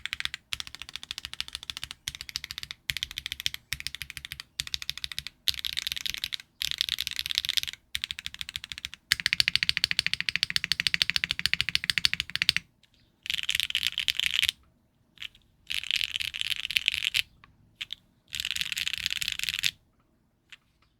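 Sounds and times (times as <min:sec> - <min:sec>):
mechanical keyboard typing: 0:00.0 - 0:12.6, 0:17.8 - 0:19.8.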